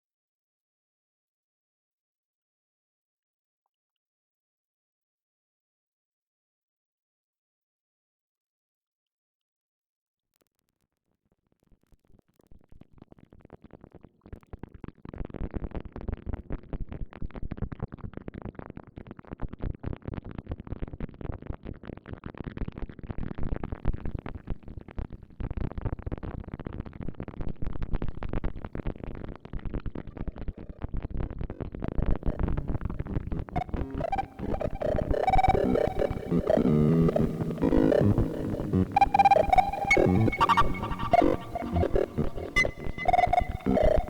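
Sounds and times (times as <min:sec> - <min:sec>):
rapid grainy synth clicks: 0:32.3 - 0:44.0.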